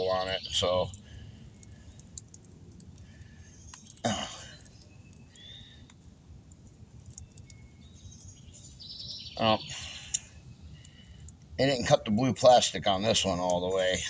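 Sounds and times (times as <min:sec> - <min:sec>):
low background hum: 0:00.0 - 0:14.0
faint small clicks: 0:01.6 - 0:07.6
man clearing throat: 0:04.1 - 0:04.6.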